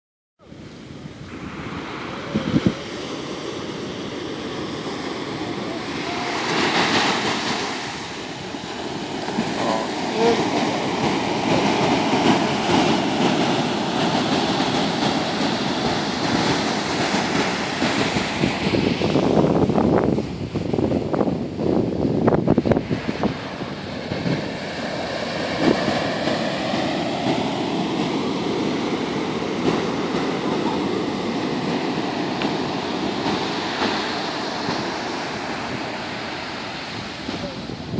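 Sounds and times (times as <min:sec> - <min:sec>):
ocean surf breaking on beach: 0:00.4 - 0:37.9.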